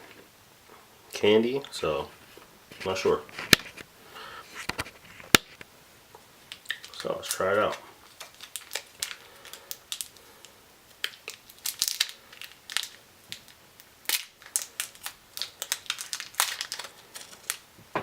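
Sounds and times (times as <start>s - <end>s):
candy wrapper crinkling: 1.5s - 3.9s, 6.4s - 17.7s.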